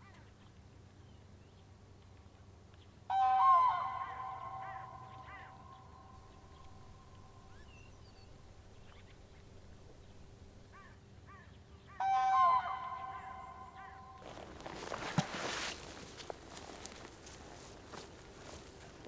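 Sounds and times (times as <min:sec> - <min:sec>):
faint steady tones: 0:02.2 - 0:19.0
loud honking bird call: 0:03.1 - 0:07.6, 0:11.9 - 0:17.0.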